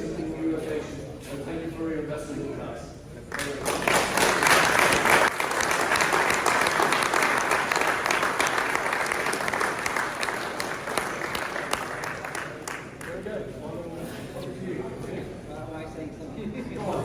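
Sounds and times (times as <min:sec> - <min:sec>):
crowd applauding: 0:03.4 - 0:13.2.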